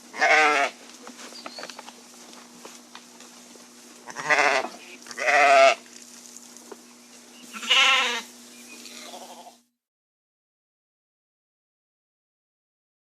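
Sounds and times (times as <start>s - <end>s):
faint steady hum: 0.0s - 9.7s
sheep bleating: 0.1s - 0.8s, 4.0s - 5.8s, 7.5s - 9.6s.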